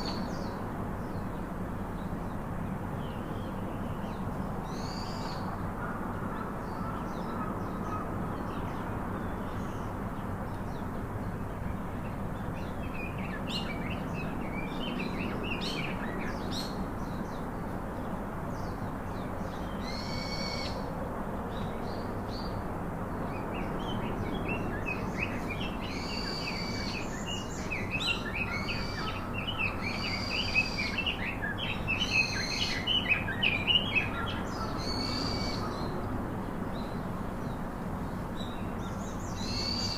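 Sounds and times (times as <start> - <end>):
steady background hiss: 0.0 - 39.9
birds chirping and calling: 23.8 - 35.9, 38.4 - 39.9.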